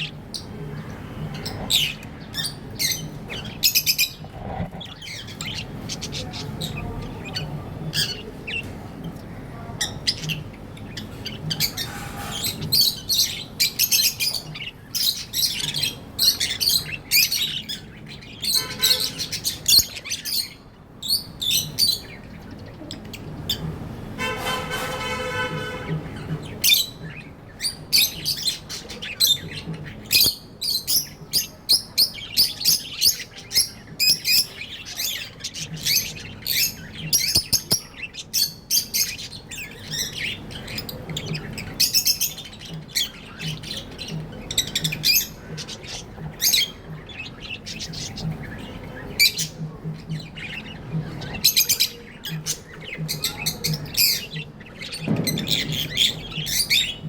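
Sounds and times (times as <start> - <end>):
budgerigars chirping: 0.0 - 57.0.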